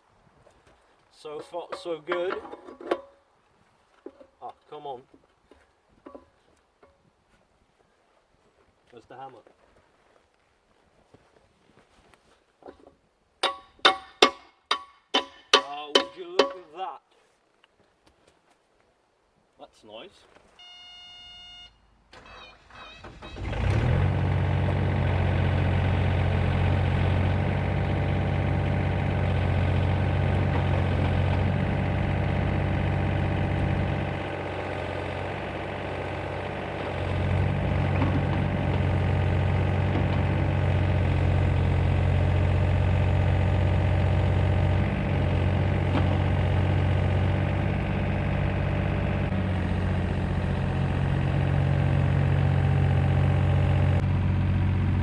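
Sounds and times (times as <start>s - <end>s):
excavator engine running: 22.2s - 55.0s.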